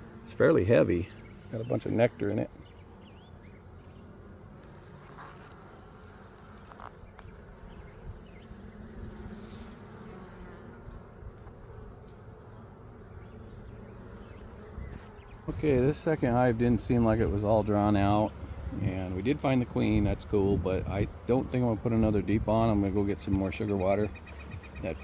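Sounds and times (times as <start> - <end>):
honeybees buzzing: 0.0 - 25.0.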